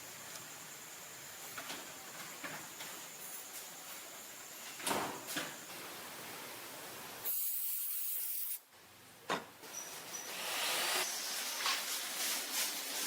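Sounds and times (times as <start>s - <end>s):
hiss: 5.3s - 8.7s, 9.8s - 13.0s.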